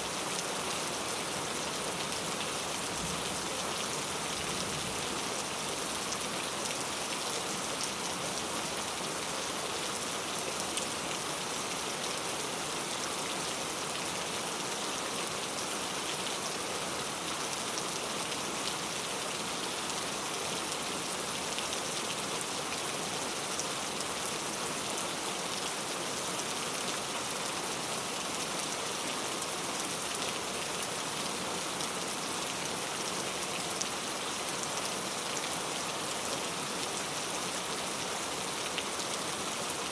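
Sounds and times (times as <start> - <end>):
heavy rain falling: 0.0 - 14.2.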